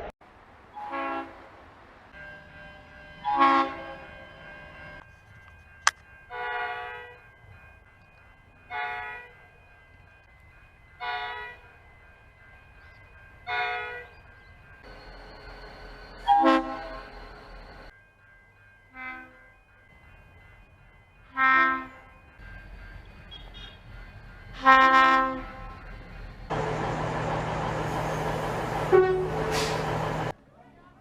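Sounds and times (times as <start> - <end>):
train horn blasts: 0.8 - 1.5, 2.2 - 4.7, 16.2 - 17.1, 21.3 - 22.0, 24.6 - 25.8, 28.8 - 30.0.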